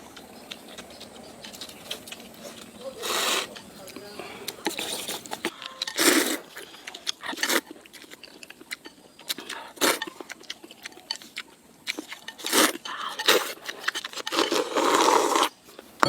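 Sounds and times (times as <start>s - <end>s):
person chewing crisp food: 0.0s - 15.9s.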